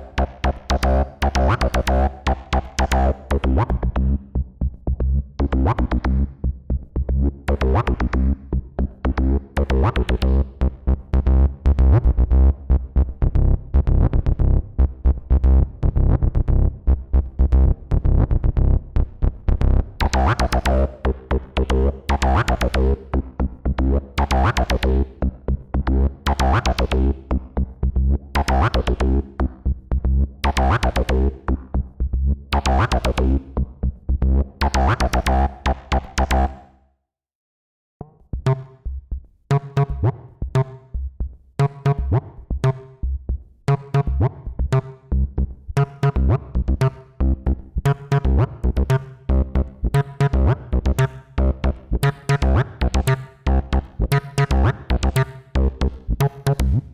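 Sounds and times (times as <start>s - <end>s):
squelchy acid synth bassline: 0.0s - 4.2s, 20.0s - 31.8s, 32.5s - 33.7s, 34.3s - 36.6s, 39.5s - 40.8s, 41.6s - 56.9s.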